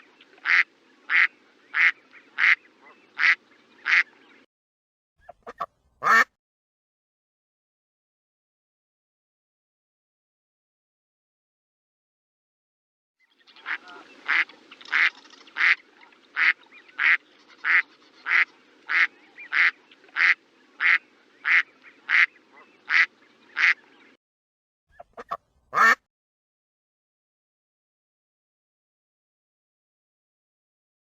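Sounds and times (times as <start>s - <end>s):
faint low background hiss: 0.0s - 4.4s, 13.4s - 24.1s
duck quacking: 0.4s - 4.1s, 5.3s - 6.3s, 13.6s - 15.8s, 16.4s - 23.8s, 25.0s - 26.0s.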